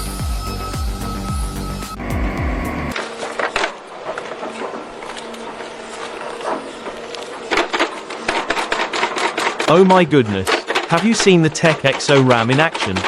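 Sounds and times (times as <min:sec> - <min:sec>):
background music: 0:00.0 - 0:05.2
machinery clicking and knocking on wood: 0:02.9 - 0:13.0.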